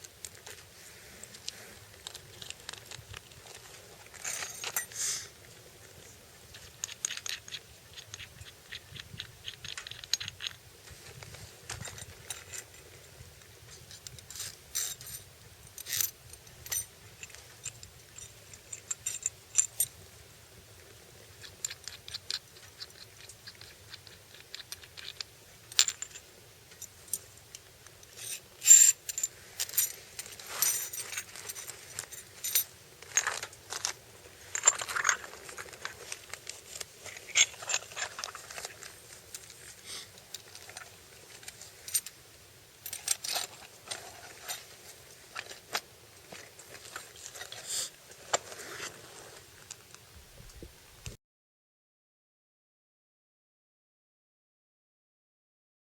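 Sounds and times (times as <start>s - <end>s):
small metal parts clinking: 2.0s - 5.2s, 13.8s - 20.0s, 21.4s - 42.2s, 42.8s - 44.7s.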